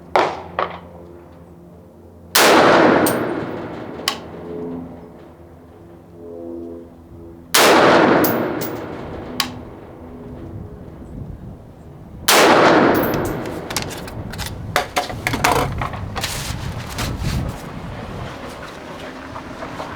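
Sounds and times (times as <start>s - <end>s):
rifle shots with echo: 2.4s - 4.4s, 7.6s - 10.0s, 12.3s - 13.7s
sharp metallic clicks and clanks: 3.0s - 4.3s, 8.2s - 9.6s, 12.9s - 15.9s.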